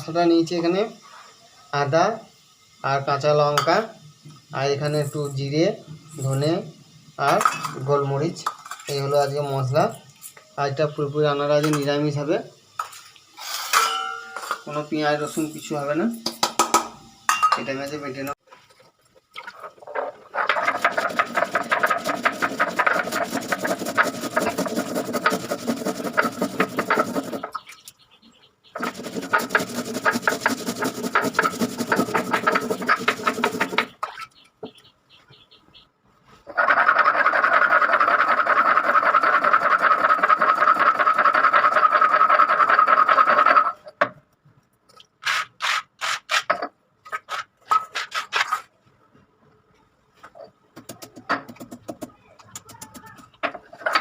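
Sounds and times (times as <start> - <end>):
grinder grinding spice paste: 20.0 - 27.6, 28.8 - 33.9, 36.5 - 43.8.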